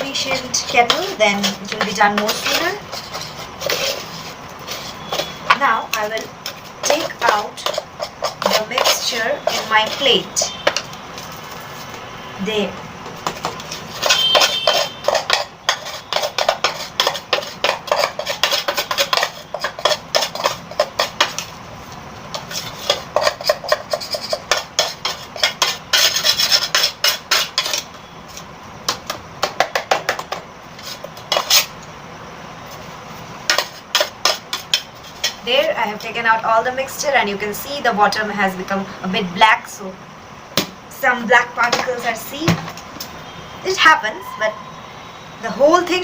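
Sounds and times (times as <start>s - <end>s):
spoon scraping inside kettle: 0.0s - 5.6s, 6.4s - 10.2s, 13.7s - 21.5s.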